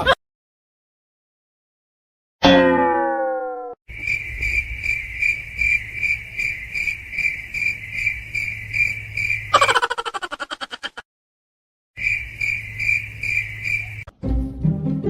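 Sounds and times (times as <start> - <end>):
cricket chirping: 3.9 - 10.7, 12.0 - 14.1.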